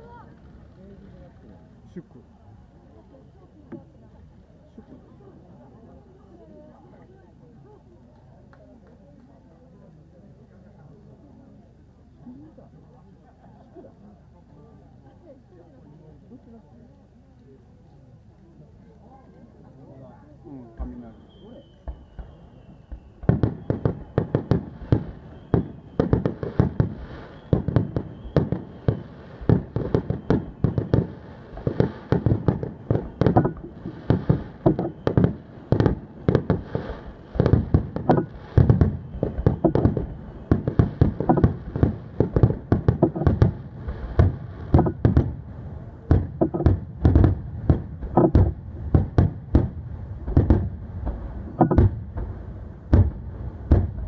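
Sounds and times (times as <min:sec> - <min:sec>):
fireworks bursts with echo: 0:20.7 - 0:54.0.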